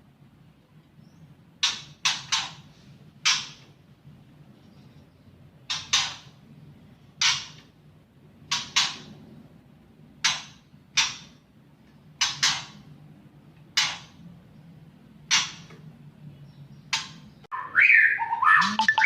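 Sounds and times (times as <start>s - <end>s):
songbird harsh chattering calls: 16.8s - 19.0s.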